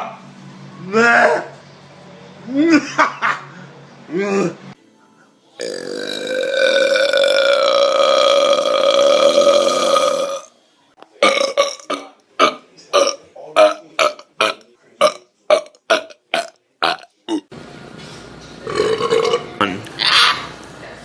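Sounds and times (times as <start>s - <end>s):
person burping: 5.6s - 10.5s, 11.2s - 17.5s, 18.7s - 19.5s.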